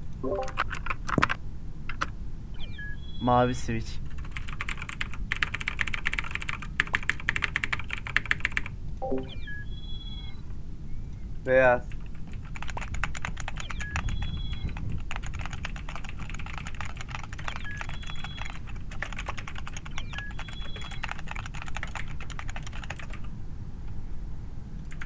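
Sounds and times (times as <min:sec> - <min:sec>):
mechanical keyboard typing: 0:00.4 - 0:02.1, 0:04.1 - 0:08.7, 0:11.9 - 0:23.3.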